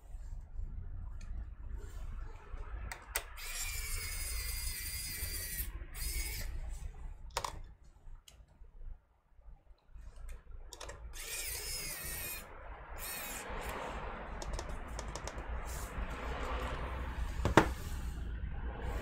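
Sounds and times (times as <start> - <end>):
high whirring: 3.0 - 6.8, 10.8 - 19.0
screwdriver clicking: 14.4 - 15.4.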